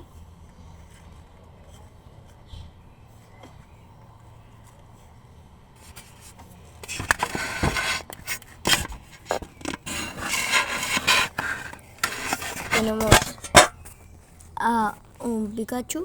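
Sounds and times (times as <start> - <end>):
trading cards scraping: 5.8 - 14.4.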